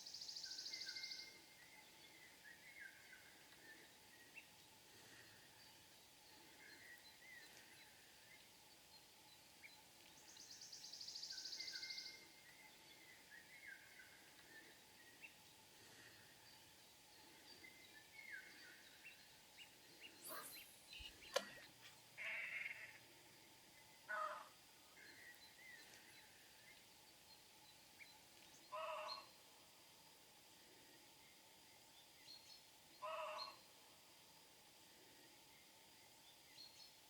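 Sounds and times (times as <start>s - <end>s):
distant bird calls: 0.0s - 29.5s.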